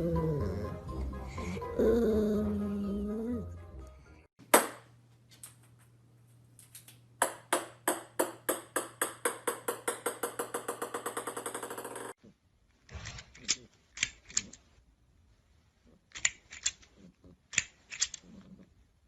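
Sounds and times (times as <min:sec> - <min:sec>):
music: 0:00.0 - 0:04.3
small hard object bouncing: 0:07.2 - 0:12.2.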